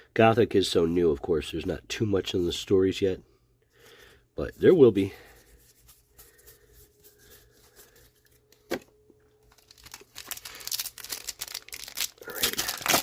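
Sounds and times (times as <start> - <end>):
foil wrapper tearing and crinkling: 9.4 - 13.0.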